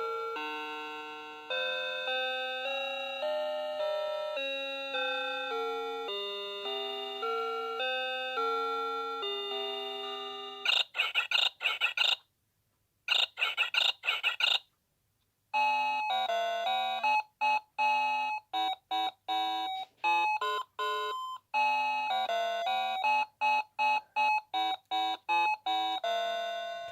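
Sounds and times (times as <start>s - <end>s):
warbling electronic alarm chirps: 10.6s - 12.2s, 13.1s - 14.6s.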